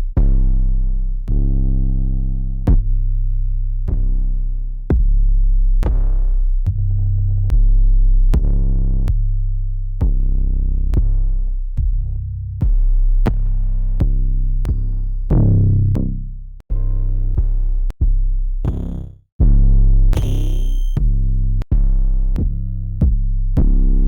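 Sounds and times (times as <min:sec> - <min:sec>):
deep bass notes: 0:00.0 - 0:24.0
drum hits: 0:20.2 - 0:21.0.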